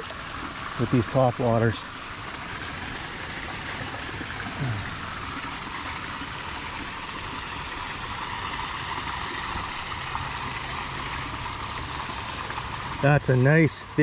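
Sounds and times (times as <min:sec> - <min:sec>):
flowing creek water: 0:00.0 - 0:14.0
man grunting: 0:04.6 - 0:04.9.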